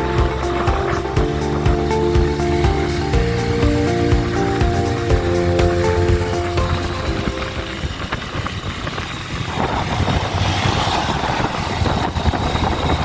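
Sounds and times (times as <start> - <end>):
waterfall roaring: 0.0 - 8.4.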